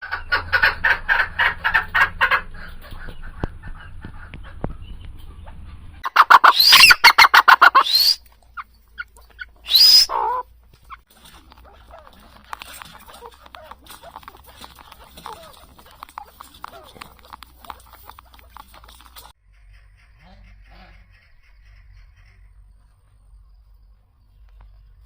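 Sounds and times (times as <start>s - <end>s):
poultry clucking: 0.0s - 25.0s
shrill rising squeals: 6.5s - 8.2s, 9.6s - 10.4s.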